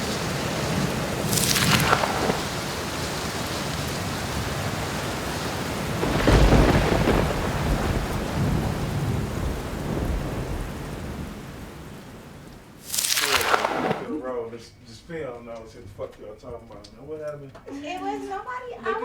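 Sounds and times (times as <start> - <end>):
steady rain: 0.0 - 14.1
thunderclap: 0.0 - 14.1.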